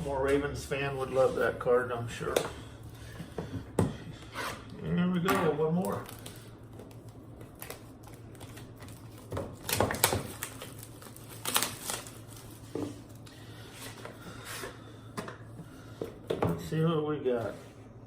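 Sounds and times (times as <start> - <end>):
card pack crinkling and tearing: 5.8 - 13.3.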